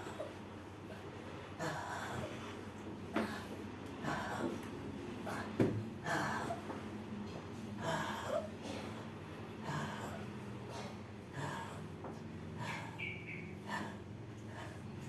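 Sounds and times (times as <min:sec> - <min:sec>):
person breathing heavily: 0:07.8 - 0:13.0, 0:13.6 - 0:15.0.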